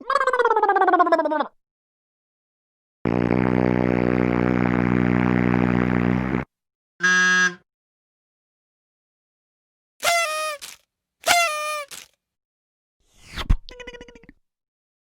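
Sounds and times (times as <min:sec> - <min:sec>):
low buzzer tone: 0:07.0 - 0:07.6
short horn-like beep: 0:07.0 - 0:07.6, 0:10.0 - 0:12.0.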